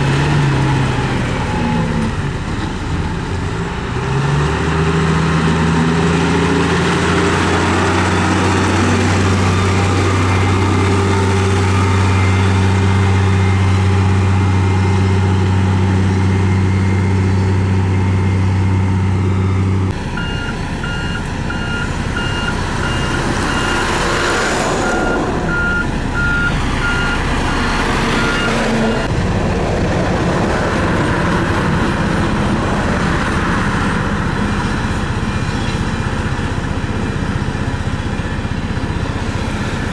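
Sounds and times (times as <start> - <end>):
heavy construction vehicle engines: 0.0 - 39.9
reversing alarm beeping: 7.4 - 15.3, 19.0 - 29.1.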